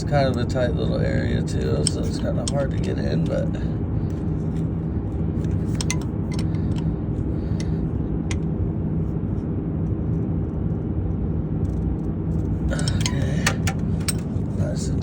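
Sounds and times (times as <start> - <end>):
truck engine humming: 0.0 - 9.3, 12.4 - 15.0
wrench metallic clicks: 1.7 - 3.4, 5.5 - 6.8.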